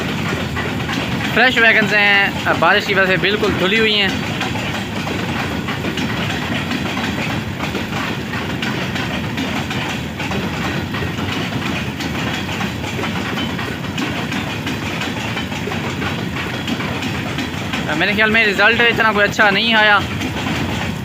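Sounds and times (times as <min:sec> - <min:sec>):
freight train rumbling past: 0:00.0 - 0:21.0
wheels clicking at rail joints: 0:00.0 - 0:21.0.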